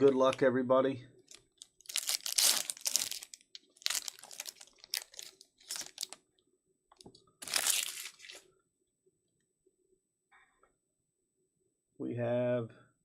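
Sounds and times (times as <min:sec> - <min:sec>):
plastic wrapper crinkling and tearing: 0:01.3 - 0:06.2, 0:07.4 - 0:08.4.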